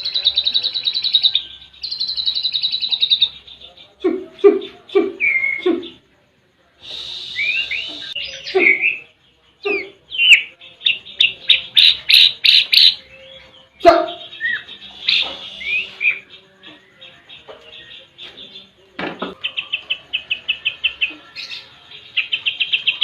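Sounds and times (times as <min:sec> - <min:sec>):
bird calling: 0:06.9 - 0:18.6.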